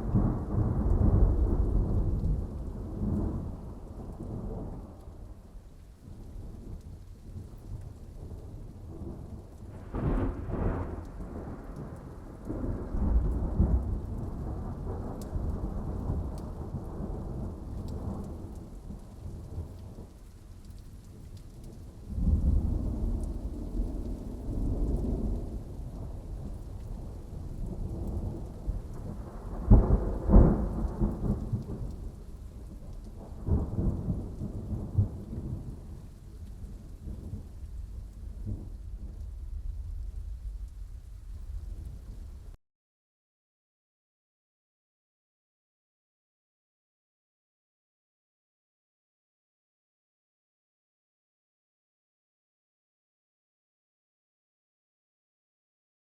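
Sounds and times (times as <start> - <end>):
thunder rumbling: 0.0 - 20.2, 20.8 - 42.6
steady rain: 0.0 - 42.6.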